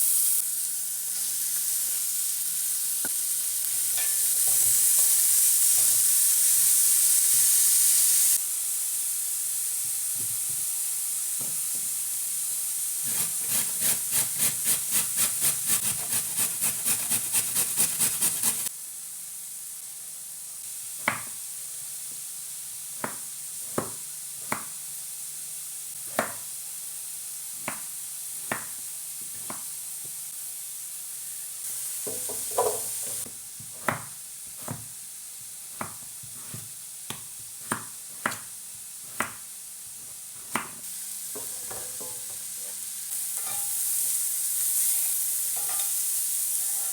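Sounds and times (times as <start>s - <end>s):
food sizzling in a pan: 0.0s - 46.9s
rhythmic stirring strokes: 13.1s - 18.7s.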